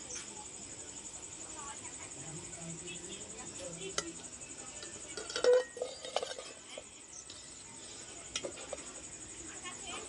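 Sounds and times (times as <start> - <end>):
dishware clinking: 4.8 - 6.9
dishware knocking: 5.2 - 6.4.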